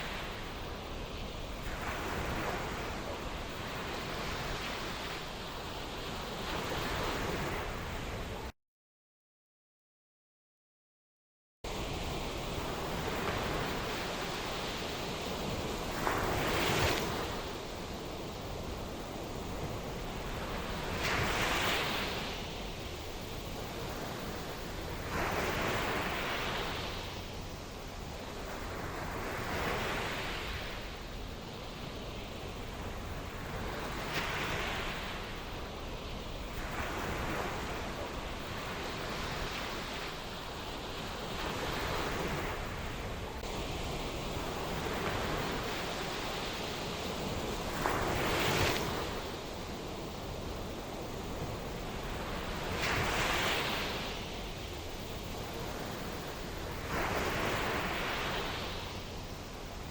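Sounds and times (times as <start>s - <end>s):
waves breaking: 11.7s - 59.9s.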